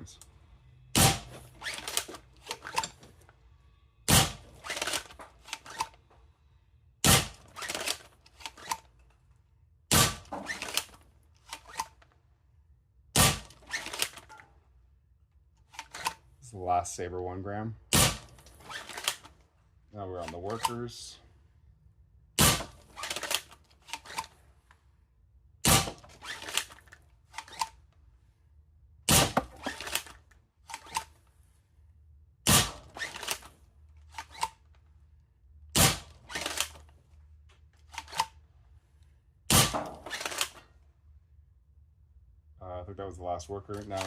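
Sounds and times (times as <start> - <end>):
foam dart blaster shots: 1.0 - 1.8, 4.1 - 4.9, 7.0 - 7.4, 9.9 - 10.4, 13.2 - 14.0, 17.9 - 18.4, 22.4 - 22.8, 25.6 - 26.0, 29.1 - 29.7, 32.5 - 33.2, 35.8 - 36.5, 39.5 - 40.3.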